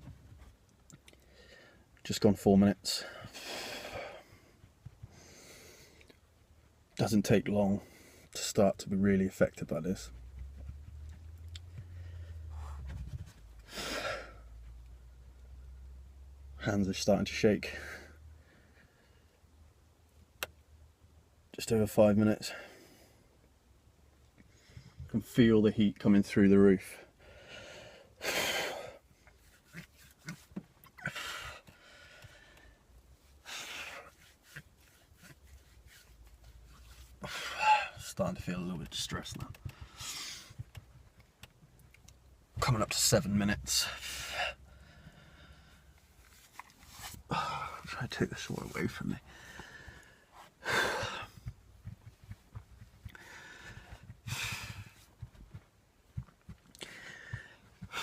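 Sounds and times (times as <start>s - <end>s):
man breathing heavily: 1.1s - 1.9s, 3.0s - 6.2s, 7.8s - 8.4s, 11.7s - 14.7s, 26.9s - 30.1s, 31.0s - 34.6s, 36.8s - 38.0s, 39.6s - 40.7s, 43.8s - 46.1s, 47.1s - 48.0s, 49.1s - 58.0s
faint low bumps: 6.2s - 18.7s, 38.0s - 58.0s.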